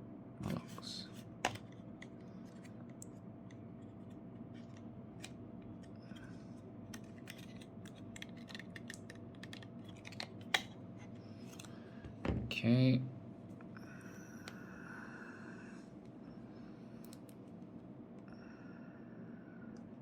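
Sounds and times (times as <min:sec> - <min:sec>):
faint steady hum: 0:00.0 - 0:20.0
plastic parts clicking: 0:06.9 - 0:10.7.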